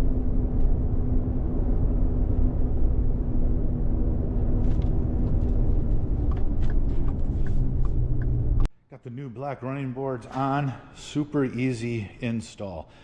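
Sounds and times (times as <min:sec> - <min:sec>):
tyre and road noise: 0:00.1 - 0:08.7.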